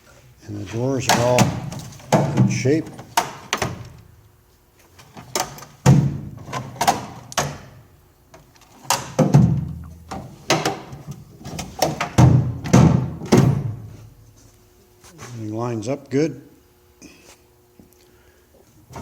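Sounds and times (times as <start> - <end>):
metal tool chest doors clunking: 1.0 - 4.0, 5.0 - 7.8, 8.8 - 13.9.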